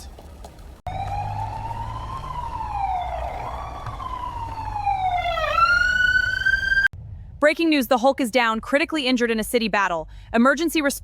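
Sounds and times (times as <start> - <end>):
low engine rumble: 0.6 - 7.1
ambulance siren wailing: 0.9 - 6.9.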